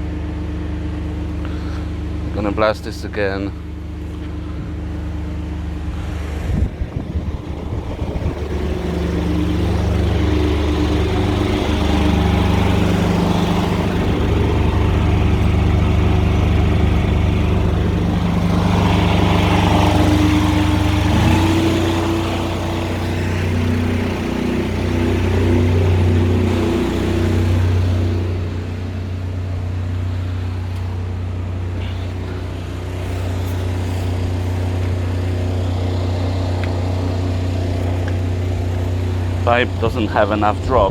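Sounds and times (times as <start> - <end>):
drain jetting machine running: 3.6 - 40.9.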